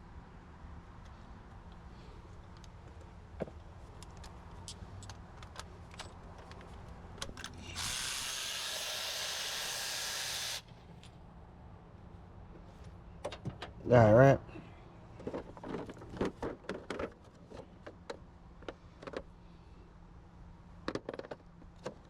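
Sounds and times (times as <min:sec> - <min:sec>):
loud spraying hiss: 0:07.6 - 0:10.7.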